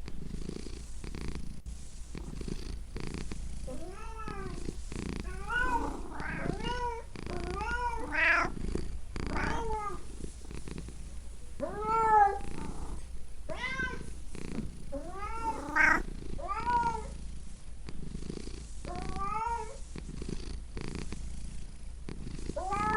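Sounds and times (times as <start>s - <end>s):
cat purring: 0.0s - 22.9s
cat meowing: 3.7s - 4.6s, 5.2s - 8.5s, 9.3s - 10.0s, 11.6s - 14.1s, 15.0s - 17.1s, 18.9s - 19.8s, 22.6s - 22.9s.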